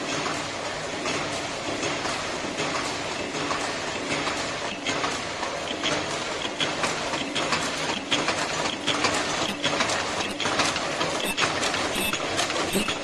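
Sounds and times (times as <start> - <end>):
machine mechanical clatter: 0.0 - 13.0
sharp machine clicks: 4.7 - 13.0.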